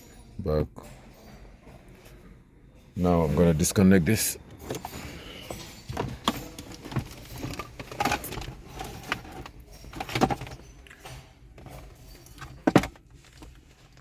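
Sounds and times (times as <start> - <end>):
equipment clicking and rattling: 4.4 - 14.0.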